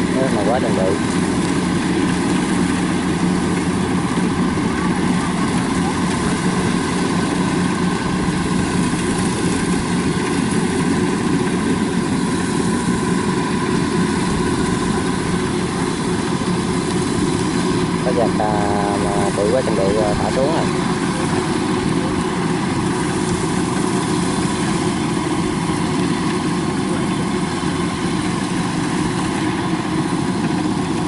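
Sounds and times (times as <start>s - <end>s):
combine harvester engine drone: 0.0s - 31.0s.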